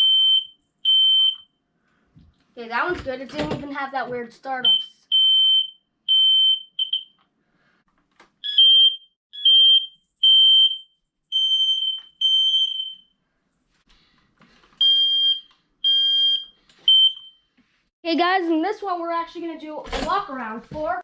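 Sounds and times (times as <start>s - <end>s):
smoke alarm high-pitched beeps: 0.0s - 1.6s, 4.6s - 7.2s, 8.4s - 13.2s, 14.8s - 17.5s.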